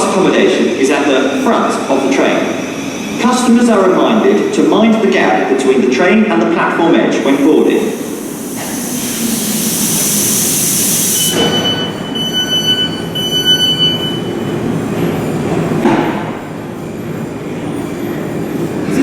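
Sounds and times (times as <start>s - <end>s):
broad hiss: 7.2s - 11.5s
electric train humming: 7.2s - 15.8s.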